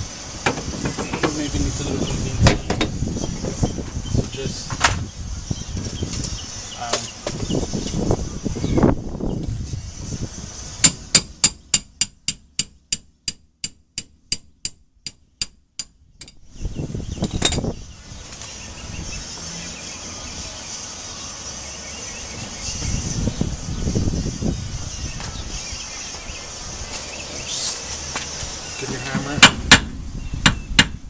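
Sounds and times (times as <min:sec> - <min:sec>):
loud clanking knock: 0:00.4 - 0:01.5, 0:02.4 - 0:03.0.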